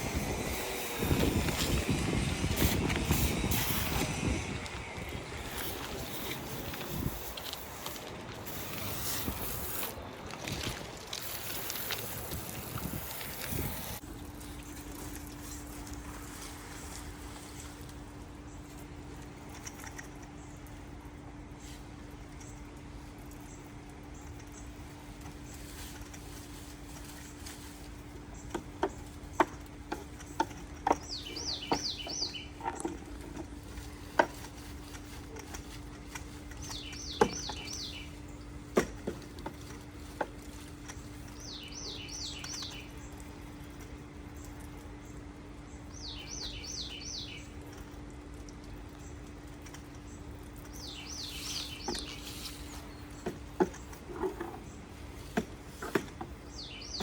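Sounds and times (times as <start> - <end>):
bird chirping: 30.2 - 32.9, 36.6 - 38.4, 41.3 - 43.2, 45.7 - 47.5, 50.1 - 54.8, 56.4 - 57.0.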